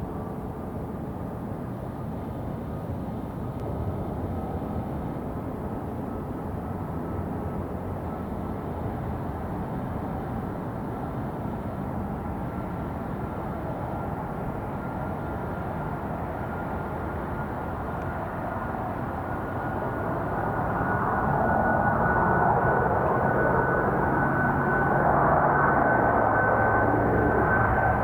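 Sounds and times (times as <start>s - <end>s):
aircraft engine roar: 0.0s - 28.0s
high engine whine rising in pitch: 20.2s - 28.0s.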